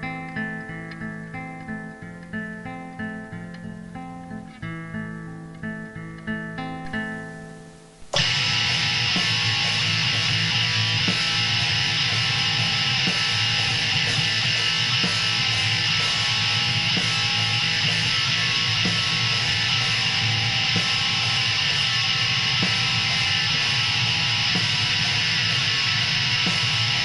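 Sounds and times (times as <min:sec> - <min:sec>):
black metal guitars: 0:00.0 - 0:27.0.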